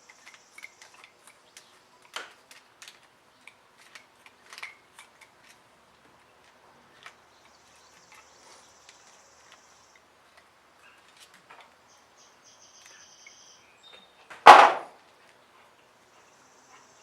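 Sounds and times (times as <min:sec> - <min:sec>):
loud metallic clank: 0:14.5 - 0:14.9.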